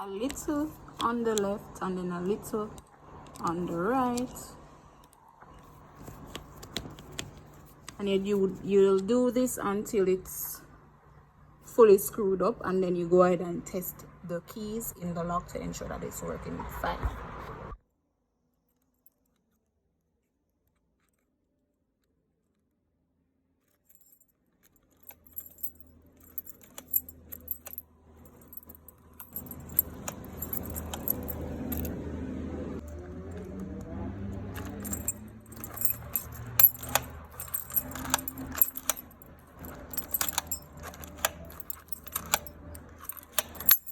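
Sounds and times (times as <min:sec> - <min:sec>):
keys jangling: 0:23.9 - 0:32.0, 0:34.4 - 0:43.9
deadbolt lock clicking: 0:34.6 - 0:43.9.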